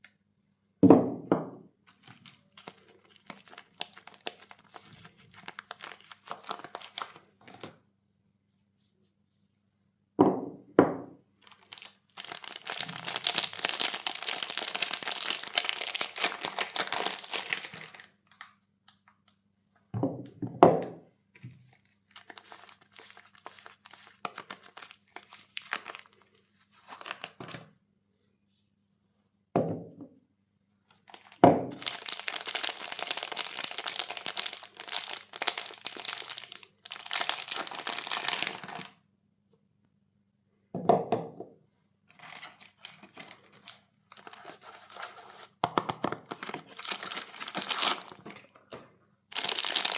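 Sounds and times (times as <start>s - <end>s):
wrappers crinkling and tearing: 1.9s - 7.7s, 11.4s - 18.5s, 21.7s - 27.5s, 30.9s - 38.9s, 42.1s - 48.4s, 49.3s - 49.9s.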